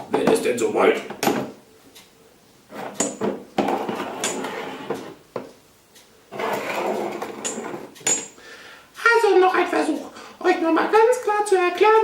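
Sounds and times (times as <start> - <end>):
rustling and clatter of objects: 2.7 - 5.6, 6.3 - 8.4
sharp clicks or knocks: 6.6 - 8.4.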